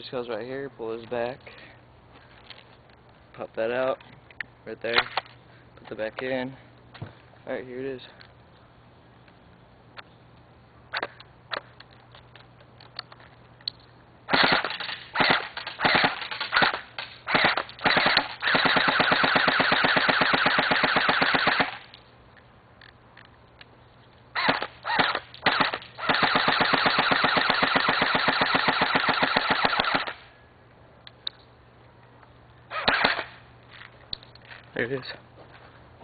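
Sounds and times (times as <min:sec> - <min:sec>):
airsoft gun firing full auto: 0:14.3 - 0:21.9, 0:24.4 - 0:30.2, 0:32.7 - 0:33.4.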